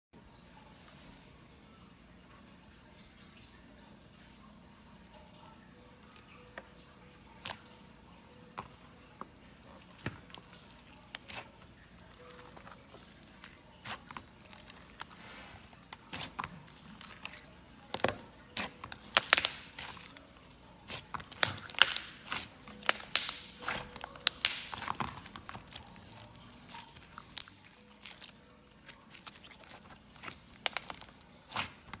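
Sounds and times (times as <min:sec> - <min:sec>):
crinkling: 0:08.6 - 0:32.0.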